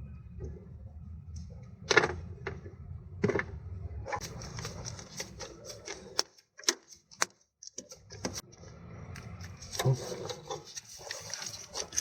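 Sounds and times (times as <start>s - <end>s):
low hum: 0.0s - 5.0s.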